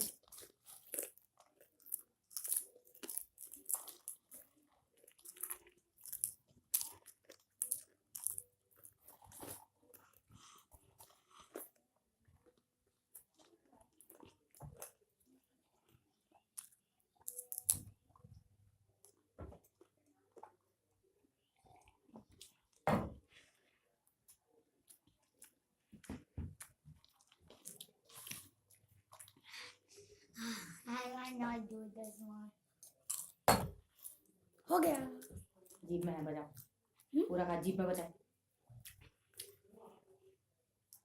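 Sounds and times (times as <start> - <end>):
popcorn crunching and chewing: 0.0 - 22.8, 26.6 - 29.7, 32.8 - 34.4, 38.7 - 40.0.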